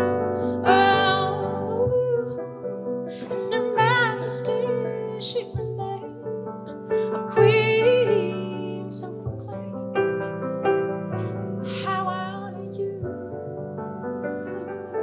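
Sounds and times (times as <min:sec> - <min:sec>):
piano accompaniment: 0:00.0 - 0:15.0
woman singing with vibrato: 0:00.3 - 0:09.8, 0:11.6 - 0:13.4.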